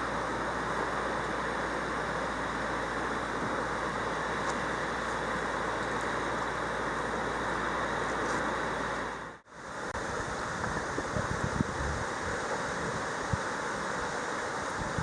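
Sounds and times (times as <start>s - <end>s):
water rushing: 0.0s - 15.0s
wind buffeting microphone: 10.0s - 15.0s.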